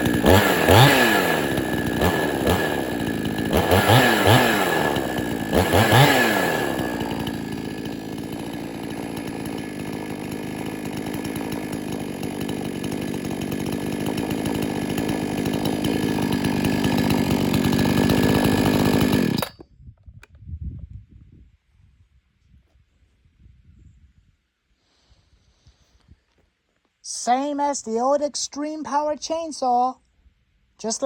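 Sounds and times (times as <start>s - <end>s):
chainsaw revving and idling: 0.0s - 19.6s.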